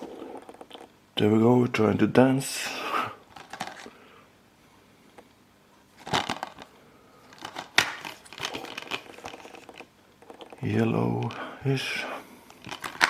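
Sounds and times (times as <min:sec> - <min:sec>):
plastic case rustling: 0:03.3 - 0:04.0, 0:06.0 - 0:11.4, 0:12.6 - 0:13.0
plastic case click: 0:07.4 - 0:08.5.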